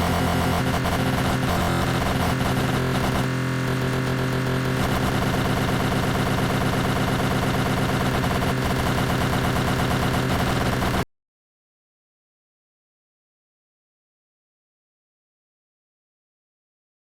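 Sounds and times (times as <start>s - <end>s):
electric lawn mower humming: 0.0s - 11.0s.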